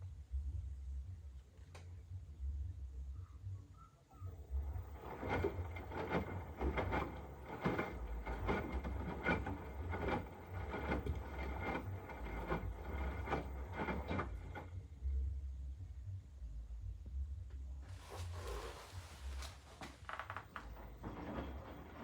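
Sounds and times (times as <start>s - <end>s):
washing machine motor whine: 4.2s - 15.8s, 17.8s - 22.0s
knocks of tumbling load: 4.5s - 14.8s, 18.2s - 22.0s.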